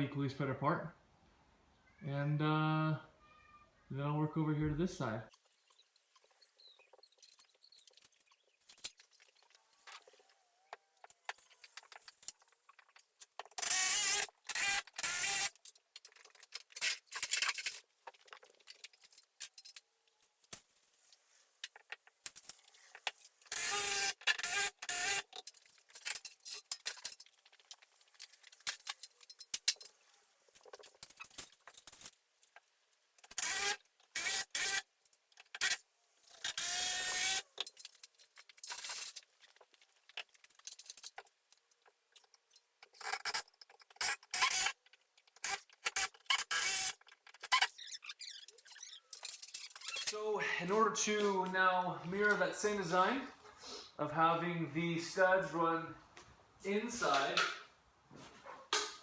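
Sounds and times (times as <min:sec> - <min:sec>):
scraping and handling noises: 0:05.3 - 0:24.4, 0:25.2 - 0:34.2, 0:37.4 - 0:53.6, 0:56.1 - 0:59.0
impact driver driving screws: 0:13.5 - 0:15.6, 0:23.5 - 0:25.3, 0:33.3 - 0:34.8.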